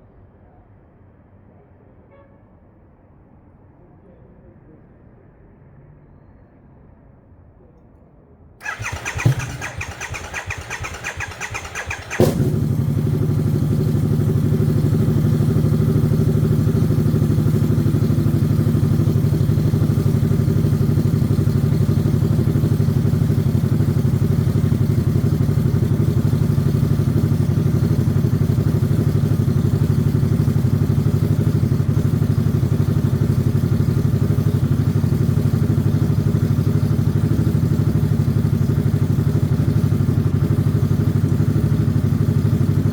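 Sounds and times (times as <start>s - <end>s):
starter motor cranking: 8.6s - 13.1s
motorcycle engine idling: 8.6s - 42.9s.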